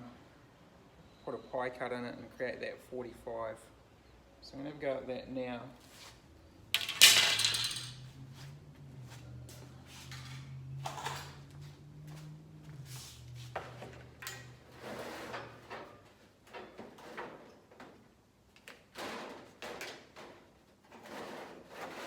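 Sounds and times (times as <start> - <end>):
steel strip and tools clanking: 14.2 - 16.0.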